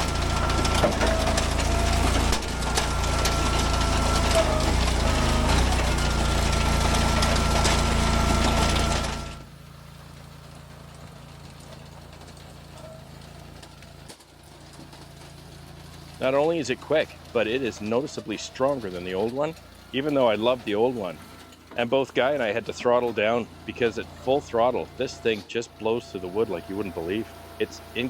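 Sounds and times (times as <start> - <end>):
wood splitting cracks: 0.0 - 9.4
low engine hum: 0.0 - 28.0
wood splitter whining: 0.0 - 28.0.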